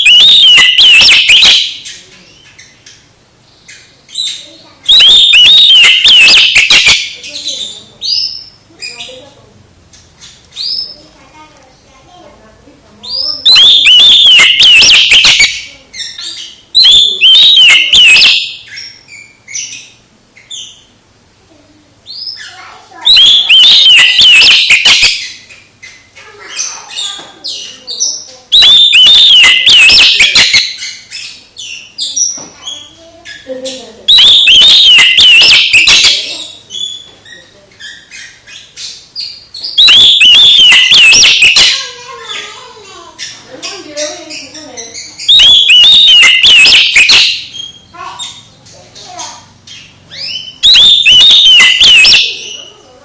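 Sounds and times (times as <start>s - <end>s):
bird singing whistled phrases: 0.0s - 2.7s, 4.1s - 9.1s, 13.0s - 20.9s, 22.1s - 25.4s, 26.4s - 33.5s, 34.1s - 42.4s, 44.0s - 48.5s, 49.7s - 52.8s.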